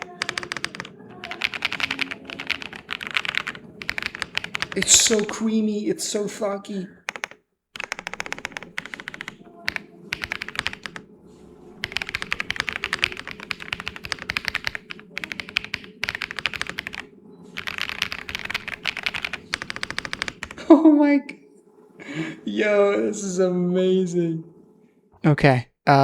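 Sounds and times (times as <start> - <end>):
fast typing on mechanical keyboard: 0.0 - 5.5, 7.1 - 11.0, 11.8 - 20.6.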